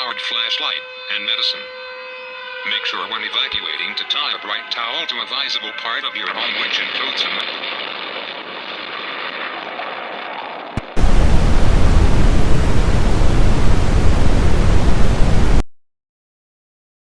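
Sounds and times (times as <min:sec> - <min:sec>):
faint hiss: 0:10.8 - 0:15.6
loud burst of static: 0:10.8 - 0:15.6.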